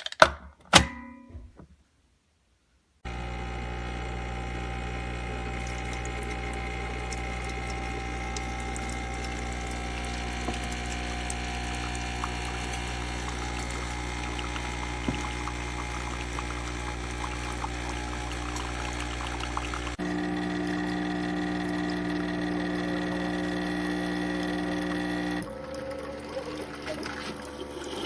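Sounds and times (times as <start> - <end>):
water pump humming: 3.0 - 28.0
coffee streaming into cup: 3.1 - 28.0.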